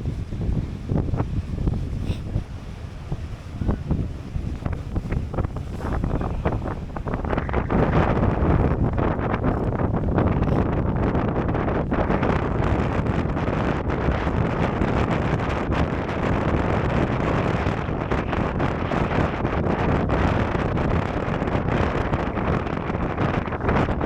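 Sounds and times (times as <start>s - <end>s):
wind buffeting microphone: 0.0s - 24.0s.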